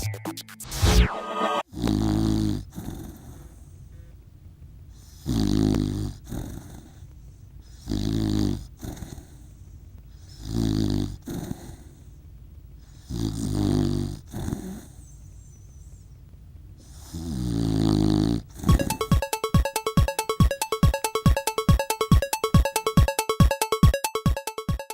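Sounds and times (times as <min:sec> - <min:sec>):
person snoring: 0:01.7 - 0:03.5, 0:16.9 - 0:18.7
quiet breathing: 0:02.6 - 0:04.3, 0:04.9 - 0:08.0, 0:08.6 - 0:13.4, 0:14.0 - 0:18.6.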